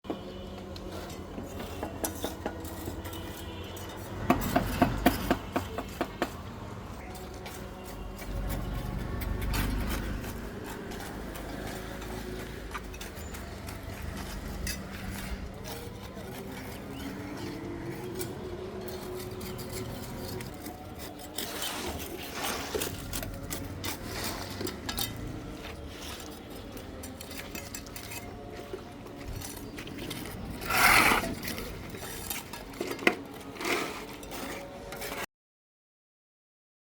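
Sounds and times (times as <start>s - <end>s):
metal tools clinking and scraping: 0.8s - 35.3s.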